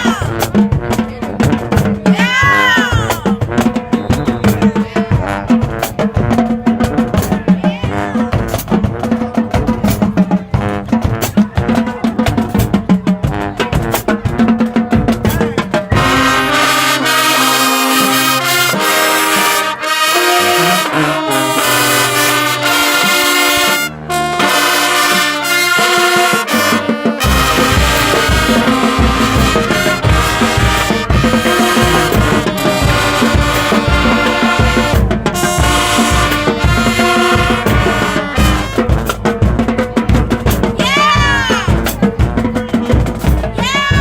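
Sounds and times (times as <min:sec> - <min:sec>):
trumpets and trombones chords: 0:00.0 - 0:10.0, 0:10.6 - 0:44.0
marching band drums: 0:00.0 - 0:44.0
heavy low beat: 0:26.2 - 0:44.0.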